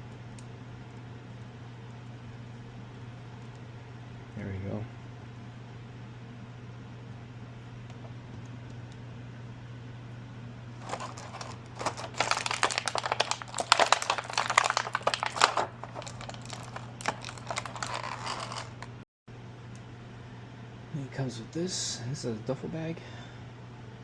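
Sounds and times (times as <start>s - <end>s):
steady low hum: 0.0s - 24.0s
plastic packaging crinkling: 10.8s - 19.0s.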